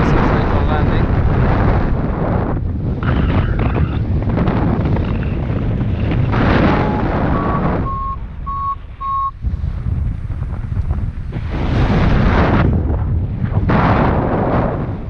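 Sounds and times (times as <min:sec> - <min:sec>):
wind buffeting microphone: 0:00.0 - 0:15.0
variometer beeping: 0:06.6 - 0:09.4.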